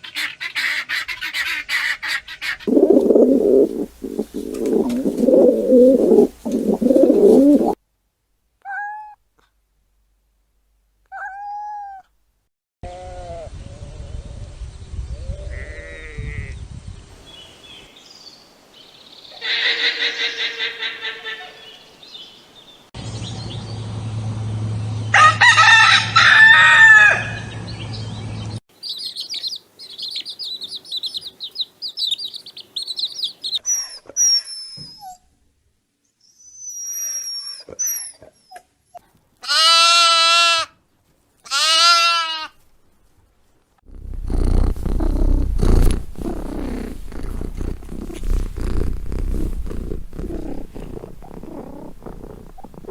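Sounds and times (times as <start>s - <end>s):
poultry calling: 0.0s - 7.8s, 19.3s - 21.8s, 44.0s - 52.9s
high chirping calls: 2.7s - 7.8s, 28.8s - 34.7s
rooster crowing: 25.1s - 27.6s
goat bleating: 39.4s - 40.7s, 41.5s - 42.6s.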